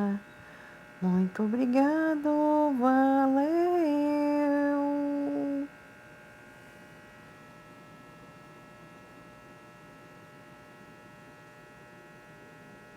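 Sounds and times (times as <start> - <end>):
faint electrical hum: 0.0 - 12.9.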